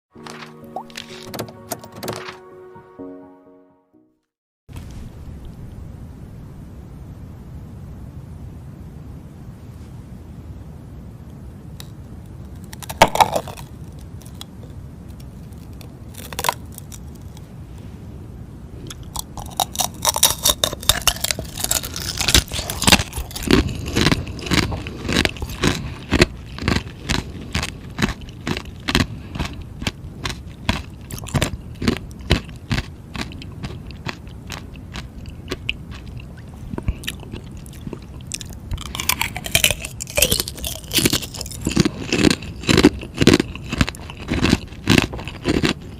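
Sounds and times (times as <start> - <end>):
biting and crunching ice: 12.5 - 17.4, 18.9 - 45.9.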